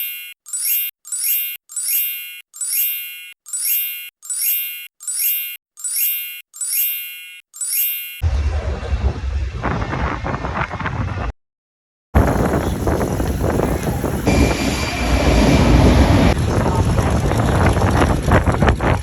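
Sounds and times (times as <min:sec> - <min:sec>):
bright high chime: 0:00.0 - 0:08.2
outdoor wind noise: 0:08.2 - 0:11.3, 0:12.2 - 0:19.0.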